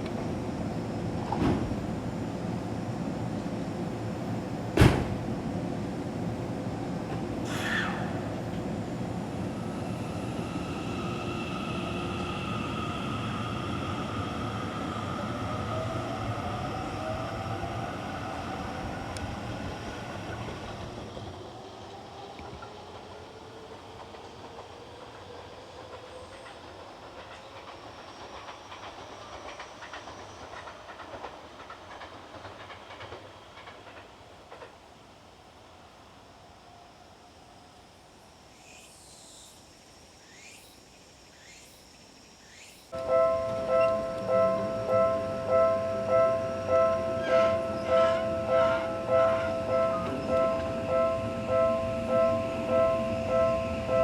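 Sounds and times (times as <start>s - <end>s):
train wheels clattering on rails: 22.3s - 35.0s, 43.0s - 54.0s.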